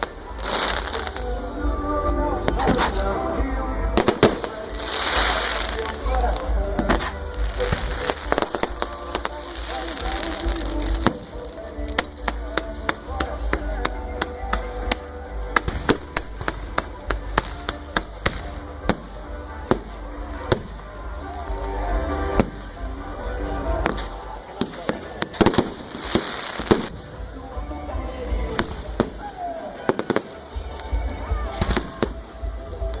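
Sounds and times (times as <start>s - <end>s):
fireworks cracking and banging: 0.0s - 1.4s, 2.4s - 3.1s, 3.9s - 21.7s, 22.3s - 22.8s, 23.7s - 27.4s, 28.4s - 33.0s
music: 0.0s - 33.0s.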